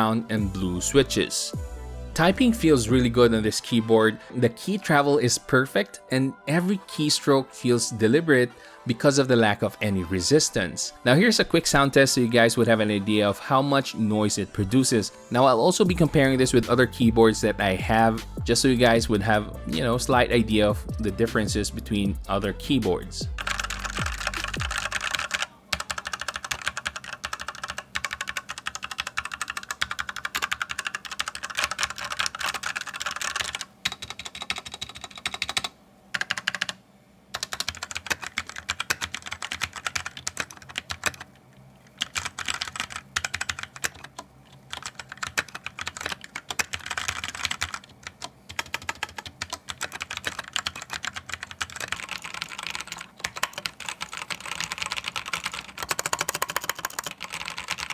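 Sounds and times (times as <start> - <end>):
typing on mechanical keyboard: 23.4 - 36.8, 37.4 - 57.9.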